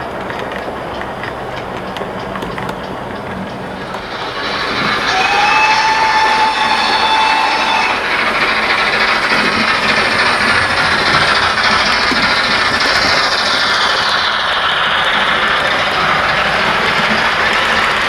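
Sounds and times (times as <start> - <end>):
steam locomotive working sound: 0.0 - 18.0
held whistle tone: 3.8 - 12.2
steam hiss falling in pitch: 3.8 - 18.0.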